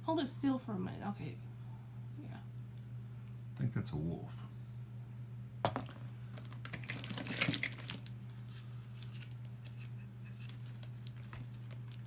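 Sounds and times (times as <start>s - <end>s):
low steady hum: 0.0s - 12.0s
plastic toys clattering: 6.3s - 8.1s.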